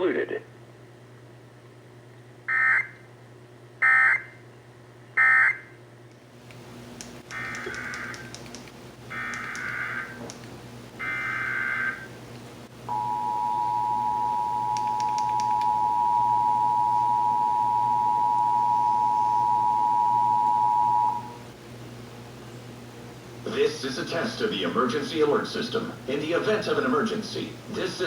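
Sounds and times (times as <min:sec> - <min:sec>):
two-tone attention signal: 0:12.9 - 0:21.4.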